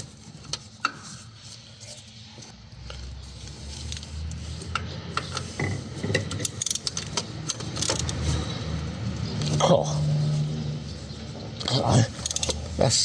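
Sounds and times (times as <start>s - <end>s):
metal tools clinking and scraping: 4.6s - 13.0s.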